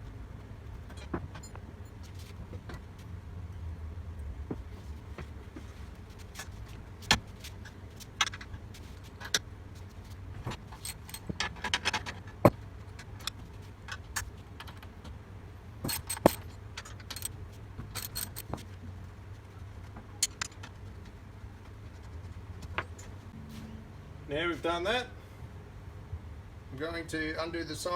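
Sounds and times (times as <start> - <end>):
low steady hum: 0.0 - 27.9
spanners clinking on metal: 10.7 - 12.0, 15.9 - 17.3, 17.9 - 18.6.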